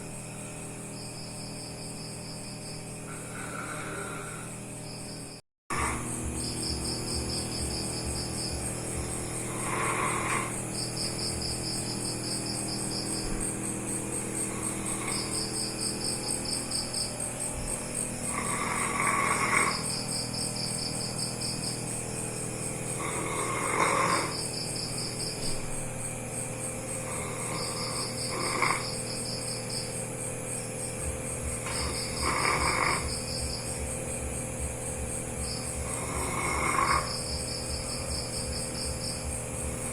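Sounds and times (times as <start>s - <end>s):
dog snoring: 3.0s - 4.6s, 5.7s - 17.0s, 17.6s - 21.8s, 22.9s - 25.0s, 26.9s - 29.7s, 31.0s - 39.9s.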